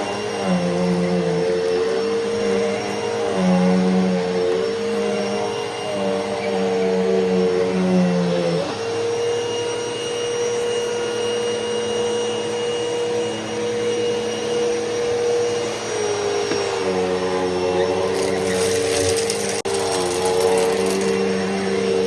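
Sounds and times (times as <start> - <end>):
vacuum cleaner running: 0.0 - 22.0
crackly rattle: 18.0 - 21.6.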